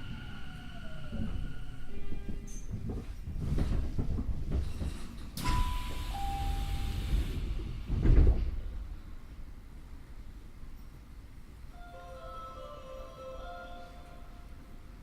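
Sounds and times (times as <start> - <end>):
train doors sliding open: 2.4 - 9.2.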